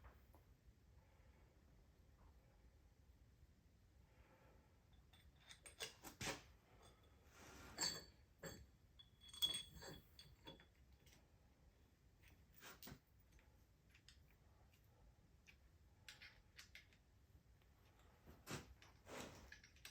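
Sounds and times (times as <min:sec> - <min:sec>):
metallic clinks of tools: 0:07.7 - 0:11.2.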